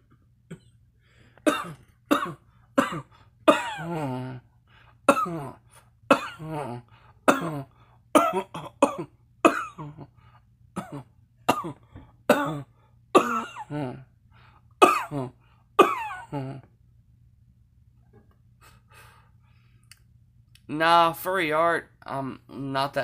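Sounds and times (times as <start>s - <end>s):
person coughing: 0.5s - 0.8s, 1.4s - 4.5s, 5.1s - 10.2s, 10.8s - 14.1s, 14.8s - 16.7s.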